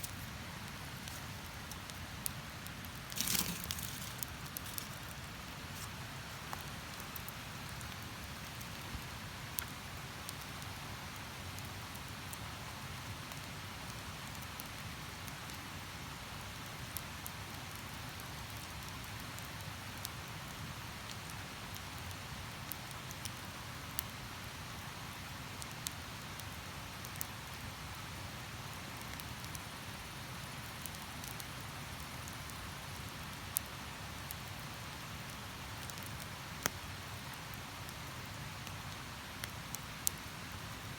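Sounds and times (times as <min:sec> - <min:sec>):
campfire crackling and popping: 0:00.0 - 0:11.2, 0:11.8 - 0:13.4, 0:21.0 - 0:24.2, 0:25.2 - 0:40.3.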